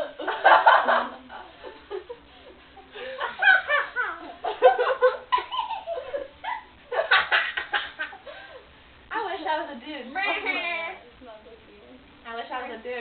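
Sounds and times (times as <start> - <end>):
girls giggling: 0.0 - 8.7.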